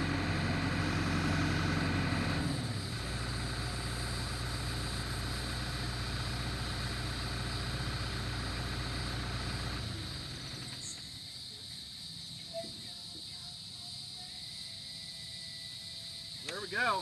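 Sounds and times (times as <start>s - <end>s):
backhoe engine idling: 0.0s - 11.4s
high buzz of insects: 10.0s - 17.0s.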